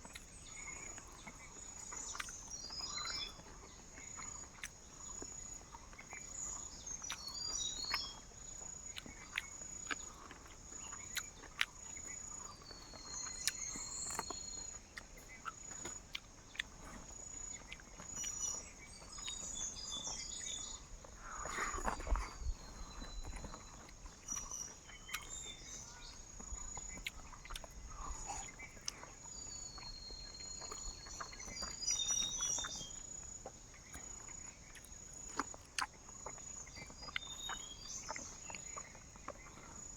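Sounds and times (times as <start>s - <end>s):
insects trilling: 0.0s - 39.9s
whistled bird calls: 29.4s - 33.0s, 37.0s - 38.8s.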